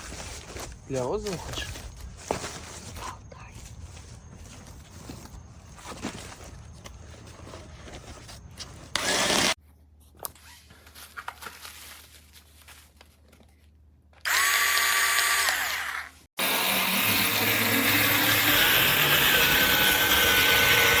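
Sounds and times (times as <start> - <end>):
electric scissors buzzing: 14.3 - 16.1.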